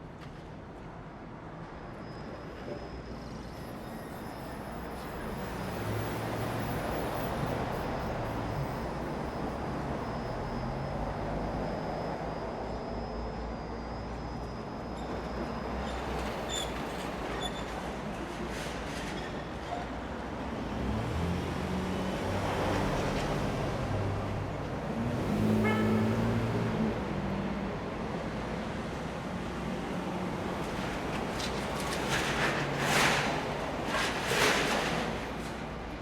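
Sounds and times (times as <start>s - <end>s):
vehicle passing with low engine hum: 20.6s - 28.6s.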